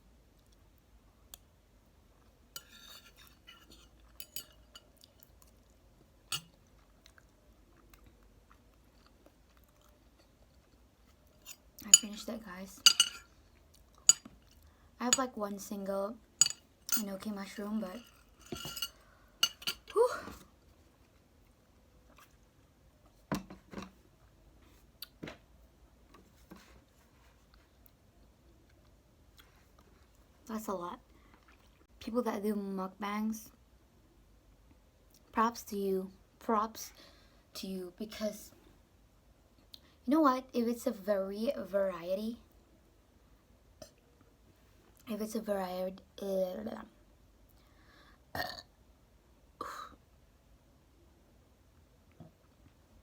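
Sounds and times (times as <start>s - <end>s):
quiet chewing of noodles: 4.8s - 11.6s, 20.6s - 23.2s, 26.4s - 30.3s, 31.1s - 31.9s
tableware knocks and clicks: 12.9s - 13.2s, 18.0s - 19.9s.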